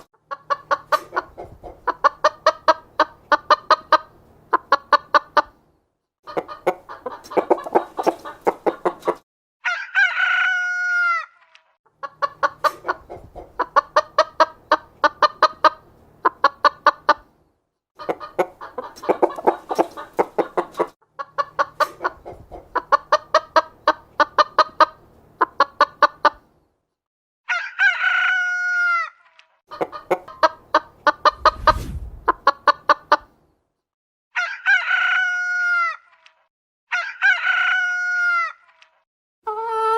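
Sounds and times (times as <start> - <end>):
chickens clucking: 0.3 - 5.6, 6.3 - 9.2, 12.0 - 17.3, 18.0 - 26.5, 29.7 - 31.7
rooster crowing: 9.6 - 11.3.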